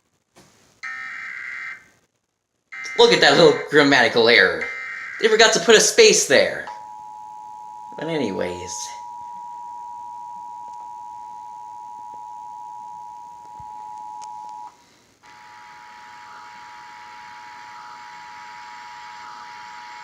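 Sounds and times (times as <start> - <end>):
static hiss: 0.0 - 0.9, 1.5 - 6.6, 13.2 - 20.0.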